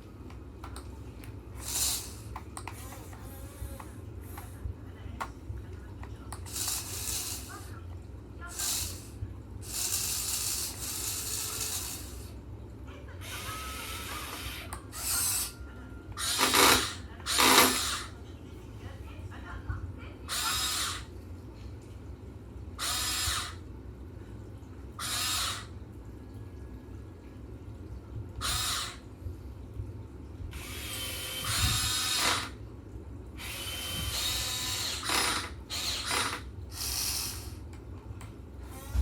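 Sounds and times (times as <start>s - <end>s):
steady low hum: 0.0s - 39.0s
electric motors whining: 1.6s - 4.6s, 6.4s - 7.8s, 8.5s - 12.4s, 13.2s - 18.1s, 20.3s - 21.1s, 22.8s - 23.6s, 25.0s - 25.7s, 30.5s - 32.6s, 33.4s - 37.6s, 38.6s - 39.0s.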